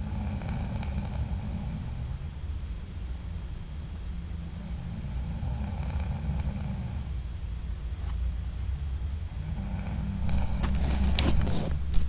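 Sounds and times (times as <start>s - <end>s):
man snoring: 0.0s - 2.0s, 4.8s - 7.1s, 9.3s - 11.5s.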